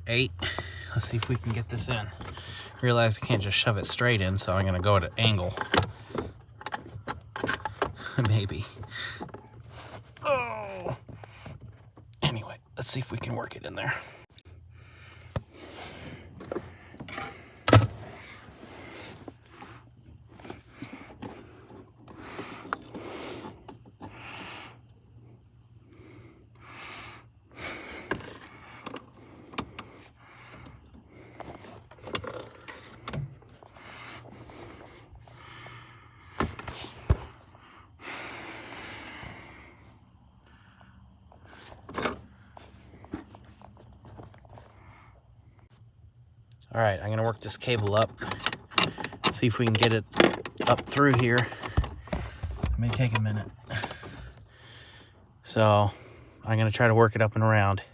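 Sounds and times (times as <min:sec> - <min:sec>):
metallic clicks and knocks: 0:47.5 - 0:53.3
heavy breathing and gasps: 0:53.6 - 0:55.2.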